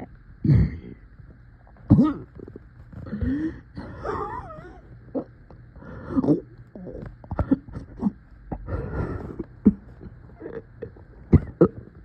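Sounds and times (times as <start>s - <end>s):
person coughing: 11.3s - 11.9s.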